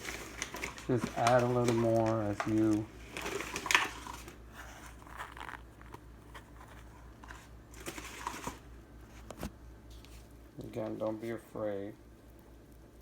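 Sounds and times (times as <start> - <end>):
grout stirred and scraped: 0.0 - 8.6.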